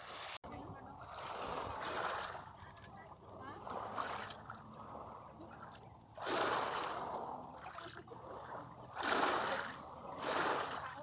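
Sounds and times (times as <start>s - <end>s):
waves breaking on beach: 0.0s - 11.0s.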